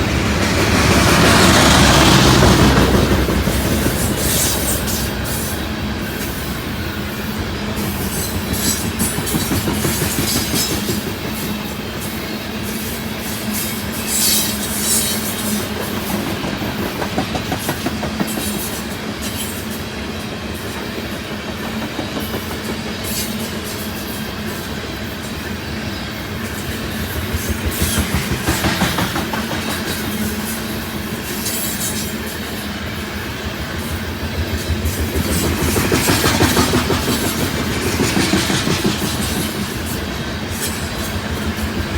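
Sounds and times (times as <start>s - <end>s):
train rumbling: 0.0s - 41.9s
train wheels clicking over rail joints: 0.0s - 41.9s.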